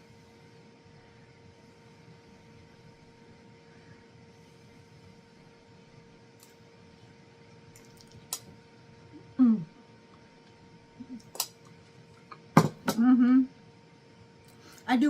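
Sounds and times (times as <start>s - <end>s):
faint steady hum: 0.0s - 15.0s
person humming mmm: 9.1s - 9.8s, 12.9s - 13.5s.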